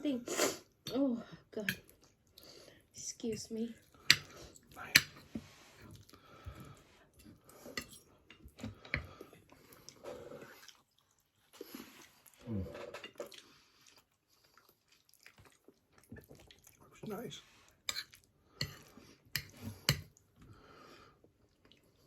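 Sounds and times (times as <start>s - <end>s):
person chewing crunchy food: 8.7s - 16.8s.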